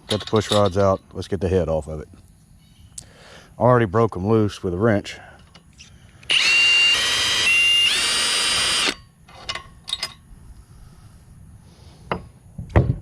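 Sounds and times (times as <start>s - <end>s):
power drill motor whining: 5.8s - 9.0s.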